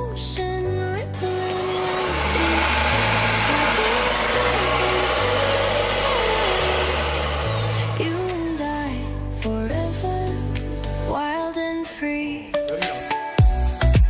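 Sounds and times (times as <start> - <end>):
background music: 0.0 - 14.0
router spindle whining: 1.2 - 9.3.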